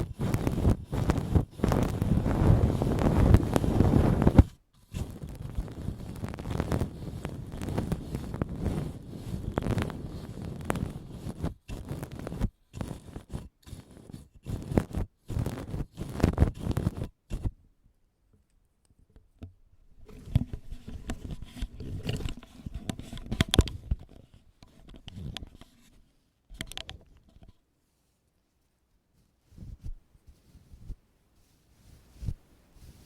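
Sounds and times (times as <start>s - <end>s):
ear pick scraping: 0.0s - 17.6s, 20.0s - 27.6s, 29.2s - 33.0s.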